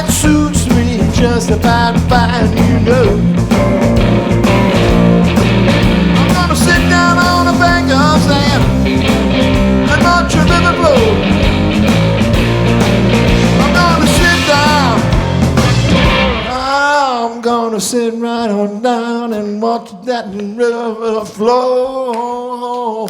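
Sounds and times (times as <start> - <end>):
bass guitar: 0.0 - 17.0
electric guitar lead lines: 0.0 - 17.0
drums: 0.0 - 18.0.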